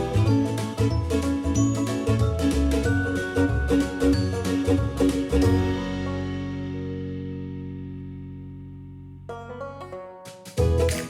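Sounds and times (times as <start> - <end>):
upbeat background music: 0.0 - 6.4, 10.5 - 11.0.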